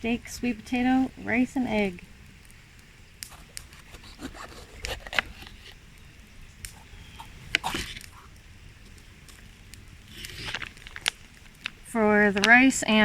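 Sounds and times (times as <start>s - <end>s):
loud scrapes: 3.3s - 5.8s, 6.8s - 8.3s, 10.1s - 11.1s
light clicks and rustling: 6.5s - 13.0s.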